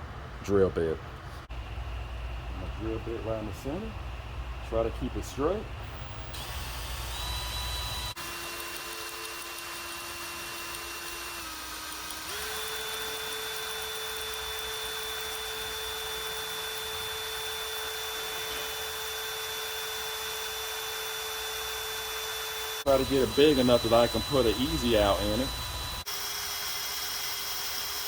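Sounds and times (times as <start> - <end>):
power drill whining under load: 5.8 - 28.0.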